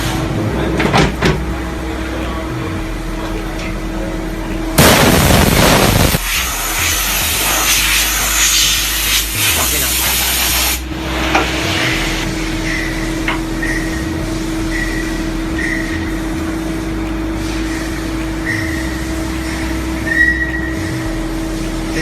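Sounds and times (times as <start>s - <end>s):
lathe drone and hum: 0.0s - 22.0s
hissing spray: 4.8s - 20.1s
short high squeaks: 12.6s - 16.0s.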